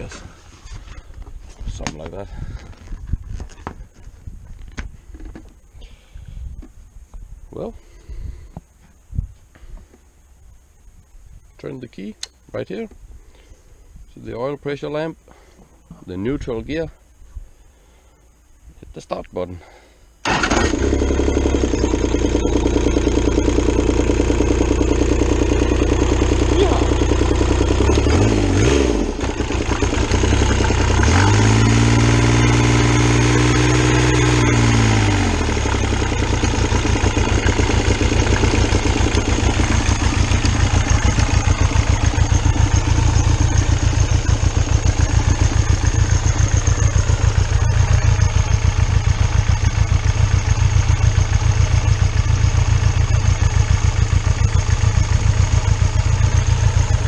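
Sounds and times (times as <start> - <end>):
diesel engine revving and idling: 20.3 - 57.0.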